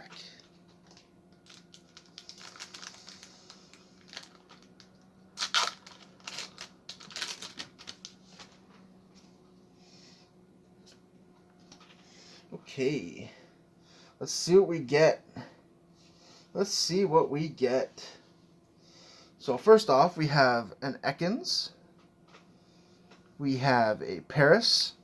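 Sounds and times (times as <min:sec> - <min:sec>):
foil wrapper crinkling and tearing: 0:00.1 - 0:08.6.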